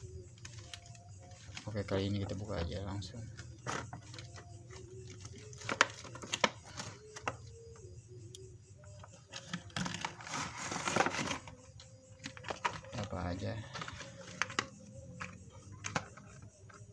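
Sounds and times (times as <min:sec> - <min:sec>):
packaging clicks and snaps: 0:03.6 - 0:07.6, 0:12.2 - 0:13.1, 0:13.7 - 0:16.9
plastic or cardboard rustling: 0:09.3 - 0:11.6.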